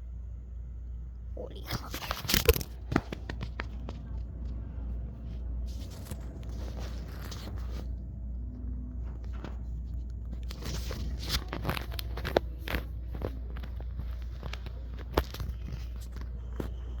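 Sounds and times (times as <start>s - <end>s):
steady low rumble: 0.0s - 17.0s
footsteps: 1.8s - 8.0s
rustling: 4.9s - 8.0s.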